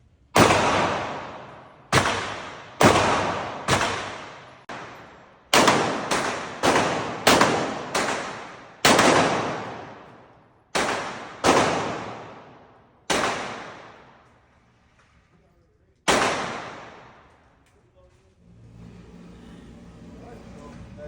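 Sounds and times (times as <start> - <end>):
echoing gunshots: 0.4 - 14.5, 16.1 - 17.4.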